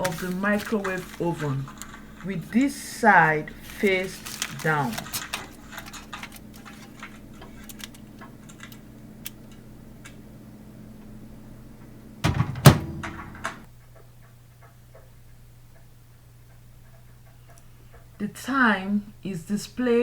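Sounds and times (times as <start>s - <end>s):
faint steady hum: 0.0s - 20.0s
microwave door shutting: 12.2s - 13.7s.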